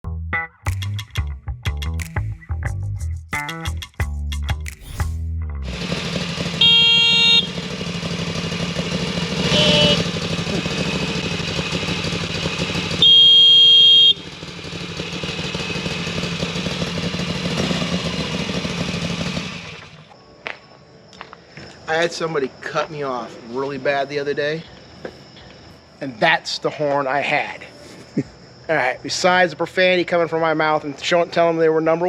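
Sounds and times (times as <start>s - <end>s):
road noise: 4.7s - 29.1s
motorcycle engine: 4.8s - 20.2s
motorcycle horn blasts: 6.4s - 8.2s, 9.3s - 10.9s, 12.8s - 14.6s.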